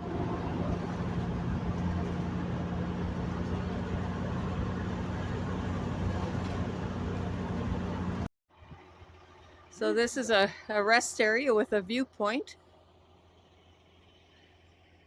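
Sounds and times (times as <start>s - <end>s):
vehicle engine and road noise: 0.0s - 15.0s.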